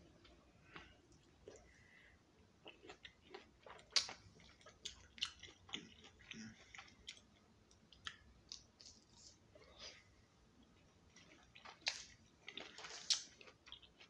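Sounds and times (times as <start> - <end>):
wet chewing and smacking: 2.6 - 9.4, 11.1 - 14.0.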